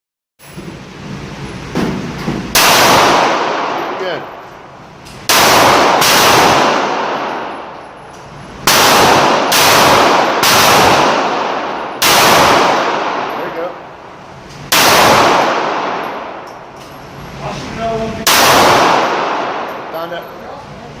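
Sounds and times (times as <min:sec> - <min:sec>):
pistol shots echoing: 0:02.5 - 0:04.4, 0:05.3 - 0:07.8, 0:08.6 - 0:13.9, 0:14.7 - 0:16.6, 0:18.2 - 0:19.9.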